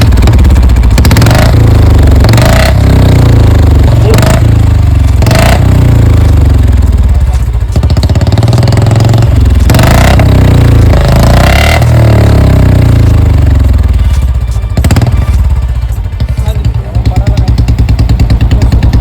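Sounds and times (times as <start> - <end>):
motorcycle engine thumping idle: 0.0 - 19.0.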